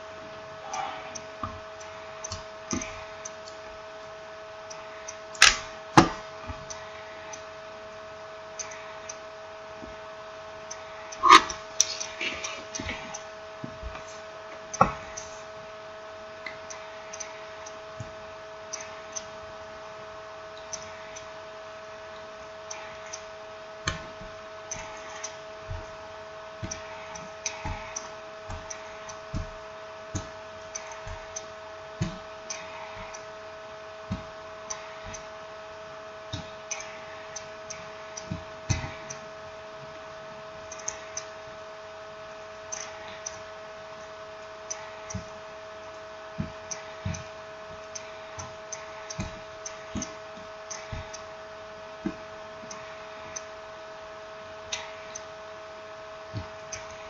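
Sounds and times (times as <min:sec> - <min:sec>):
electrical hum: 0:00.0 - 0:57.0
small clicks and taps of tools: 0:40.7 - 0:41.3.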